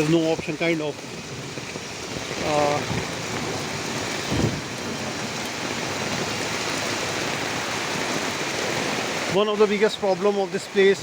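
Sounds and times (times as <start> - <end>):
heavy rain falling: 0.0 - 11.0
dull thump: 4.3 - 4.6.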